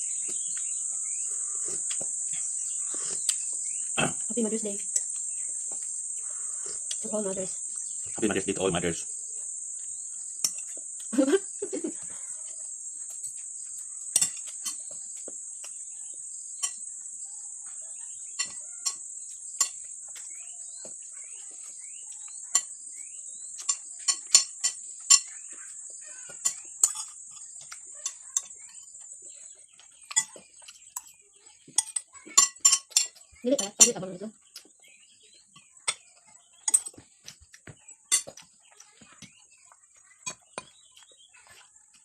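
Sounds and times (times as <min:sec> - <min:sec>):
high-pitched insect trill: 0:00.0 - 0:42.0
cutlery clinking on a plate: 0:16.6 - 0:16.8, 0:23.6 - 0:25.4, 0:26.3 - 0:28.8, 0:31.7 - 0:33.9, 0:35.6 - 0:37.5, 0:38.1 - 0:38.7.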